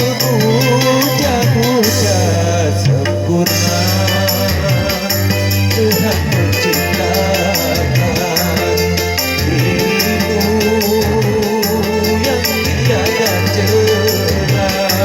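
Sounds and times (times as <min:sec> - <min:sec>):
fast percussion beat: 0:00.0 - 0:15.0
held bass line: 0:00.0 - 0:15.0
winding melody: 0:03.6 - 0:15.0.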